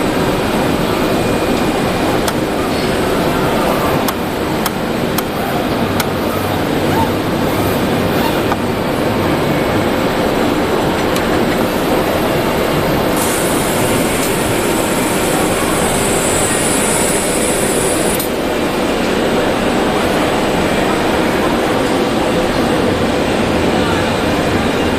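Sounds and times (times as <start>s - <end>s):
cutting machine running: 0.0s - 21.6s
high hiss: 13.0s - 18.4s.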